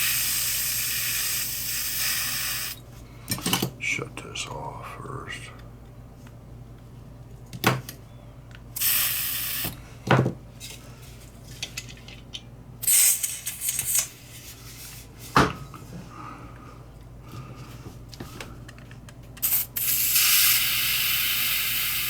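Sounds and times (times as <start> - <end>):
pressurised gas hissing: 0.0 - 2.8, 8.8 - 9.8, 12.8 - 14.1, 19.4 - 22.0.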